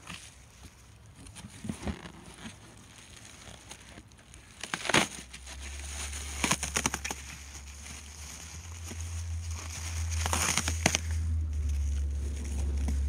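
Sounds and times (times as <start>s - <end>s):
cardboard crumpling: 0.0s - 13.0s.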